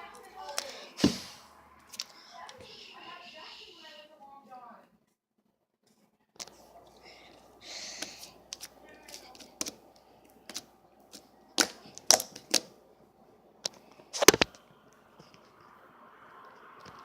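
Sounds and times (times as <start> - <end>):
squishy slime rustle: 8.0 - 12.6.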